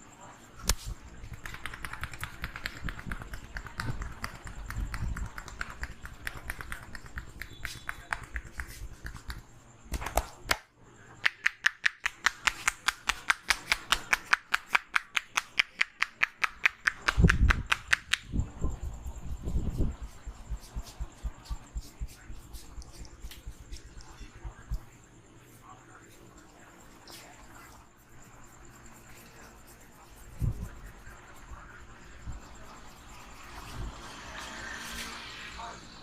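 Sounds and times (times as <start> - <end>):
massager sharp taps: 1.3 - 10.6, 11.2 - 18.3.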